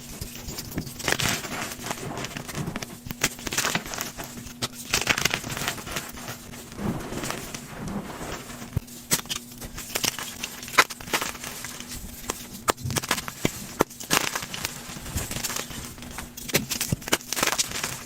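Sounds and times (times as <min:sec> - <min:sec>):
chalk crunching and crackling: 0:00.0 - 0:18.0.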